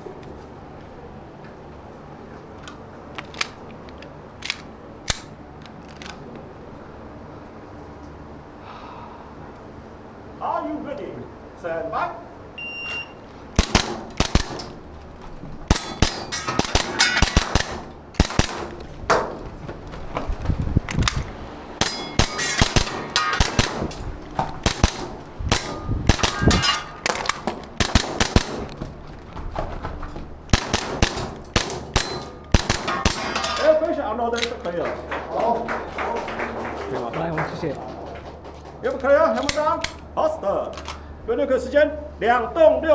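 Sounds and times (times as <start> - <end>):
airsoft pistol shots: 12.9 - 15.0, 15.7 - 19.4, 20.9 - 28.9, 30.5 - 34.8
pellets clanging on steel targets: 12.9 - 18.9, 21.2 - 28.8, 30.5 - 35.2.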